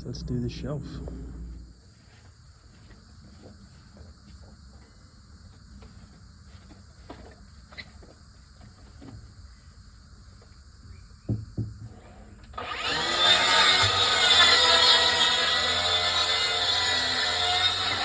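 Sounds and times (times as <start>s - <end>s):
insects chirping: 0.0s - 12.7s.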